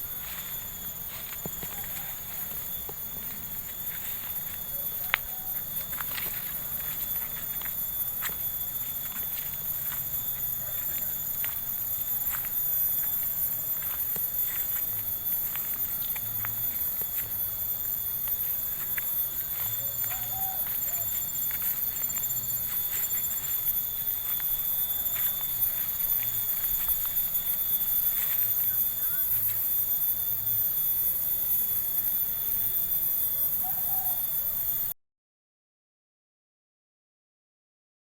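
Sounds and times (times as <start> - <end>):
footsteps: 0.0 - 30.4
insects chirring: 0.0 - 34.9.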